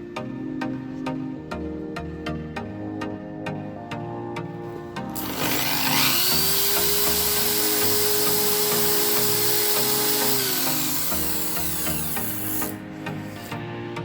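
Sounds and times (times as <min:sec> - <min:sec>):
background music with steady beat: 0:00.0 - 0:14.0
power tool grinding whine: 0:05.2 - 0:13.6.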